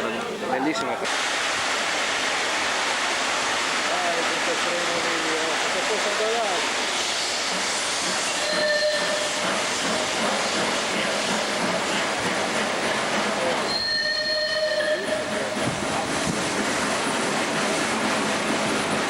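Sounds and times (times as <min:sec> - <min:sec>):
train rushing on rails: 0:00.0 - 0:19.0
high wheel squeal: 0:08.2 - 0:09.5, 0:13.7 - 0:15.4.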